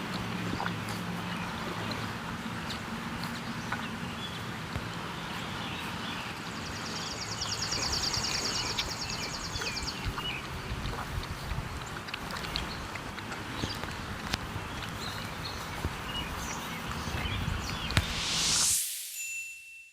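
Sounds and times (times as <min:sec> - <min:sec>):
puppies eating crunching: 0:00.0 - 0:07.1, 0:07.7 - 0:17.4
high rapid trill: 0:17.8 - 0:19.9.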